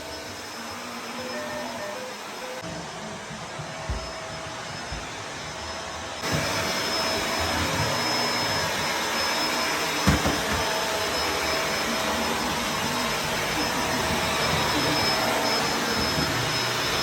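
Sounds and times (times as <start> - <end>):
vacuum cleaner motor whine: 0.0 - 17.0
vacuum nozzle bumping floor: 6.2 - 11.8, 12.7 - 17.0.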